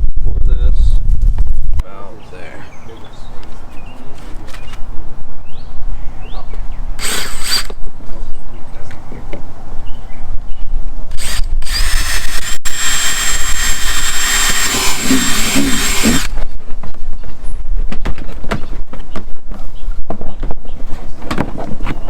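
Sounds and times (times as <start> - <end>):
power drill boring: 7.0 - 7.7, 11.2 - 16.4.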